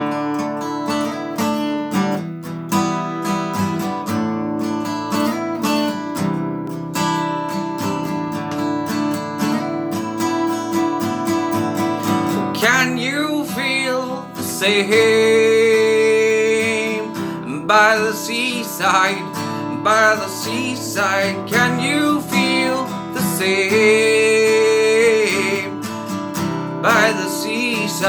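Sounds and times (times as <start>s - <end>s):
acoustic guitar strumming chords: 0.0s - 28.0s
person singing: 12.2s - 28.0s.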